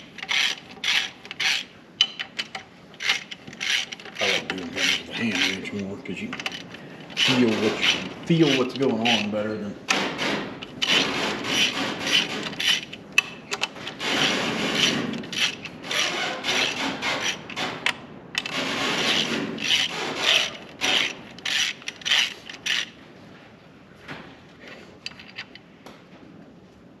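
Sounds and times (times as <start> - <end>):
ratchet wrench clicking: 0.2 - 5.5, 6.4 - 9.3, 10.7 - 22.9.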